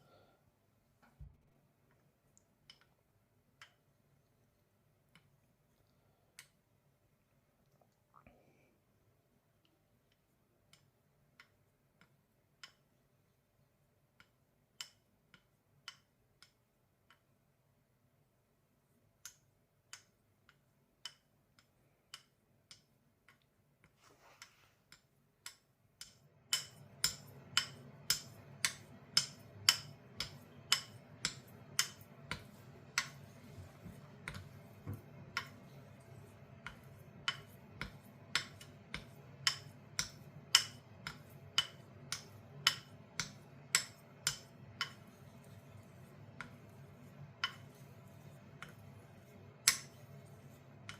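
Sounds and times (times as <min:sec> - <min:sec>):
low steady hum: 0:20.7 - 0:50.9.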